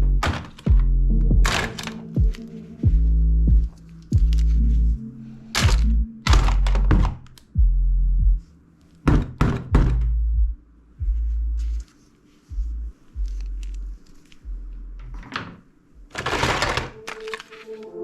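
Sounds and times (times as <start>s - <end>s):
deep thuds: 0.0s - 4.6s, 5.6s - 8.5s, 9.1s - 11.8s.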